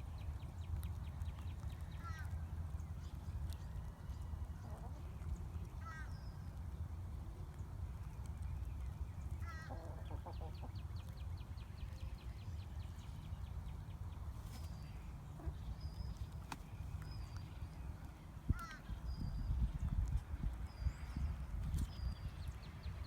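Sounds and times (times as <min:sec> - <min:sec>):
chickens clucking: 0:09.7 - 0:10.8.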